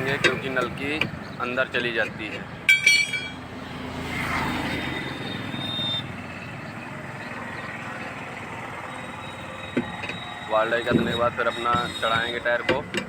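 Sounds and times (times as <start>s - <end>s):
vehicle engine passing: 2.4s - 9.1s.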